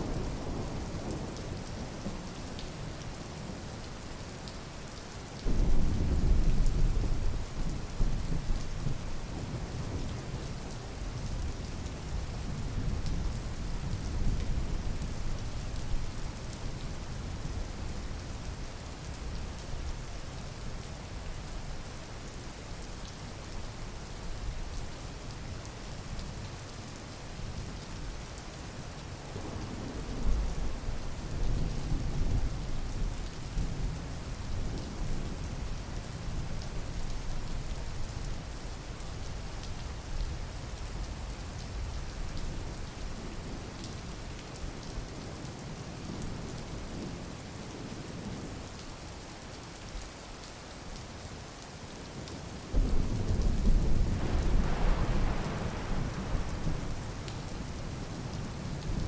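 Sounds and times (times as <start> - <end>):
steady rain: 0.0 - 59.0
thunder rumbling: 52.7 - 57.3.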